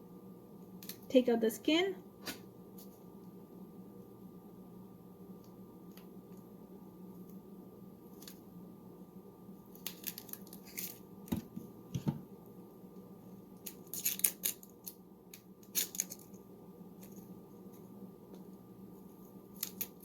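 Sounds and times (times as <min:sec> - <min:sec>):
onion skin peeling and tearing: 0:09.7 - 0:11.0, 0:13.6 - 0:16.4, 0:19.5 - 0:20.0.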